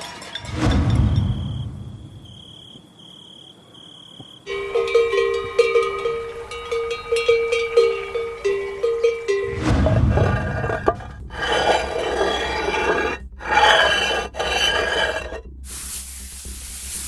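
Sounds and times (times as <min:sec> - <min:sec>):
objects scraping across surface: 0:09.5 - 0:15.4
steady hiss: 0:15.7 - 0:17.0.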